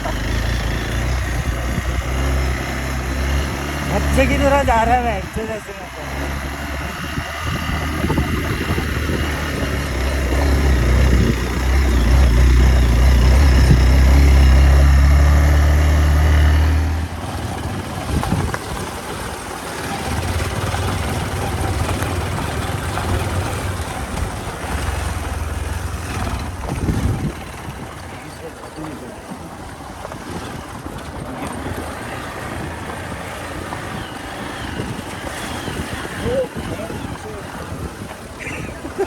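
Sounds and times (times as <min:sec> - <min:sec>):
rushing wind noise: 0:00.0 - 0:28.4, 0:29.4 - 0:39.0
motorcycle engine running: 0:00.0 - 0:39.0.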